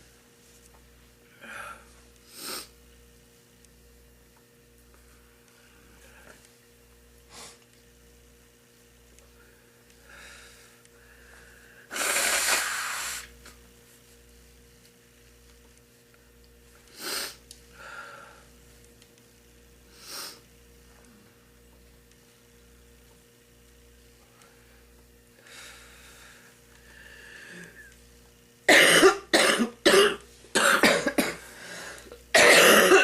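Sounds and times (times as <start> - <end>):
woman sniffing and snorting: 2.3 - 2.7, 11.9 - 13.3, 16.9 - 17.4, 19.9 - 20.4
loud rushing nasal burst: 11.9 - 13.4
woman coughing: 28.7 - 31.4, 32.3 - 33.0.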